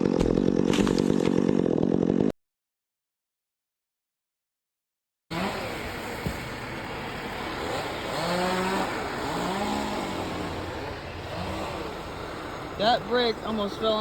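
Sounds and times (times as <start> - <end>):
chainsaw engine revving: 0.0 - 2.3, 5.3 - 14.0.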